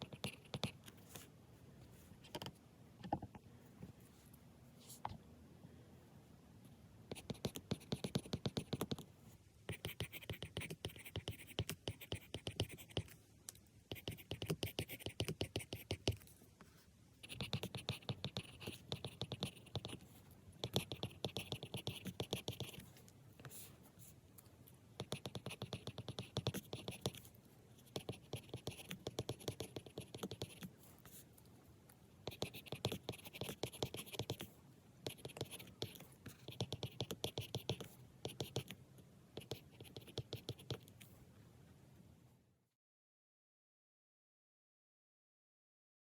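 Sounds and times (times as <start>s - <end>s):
pen scratching on paper: 0.0s - 1.2s, 7.1s - 9.0s, 9.7s - 13.2s, 13.9s - 16.3s, 17.2s - 23.7s, 25.0s - 31.2s, 32.2s - 38.8s, 39.4s - 40.9s.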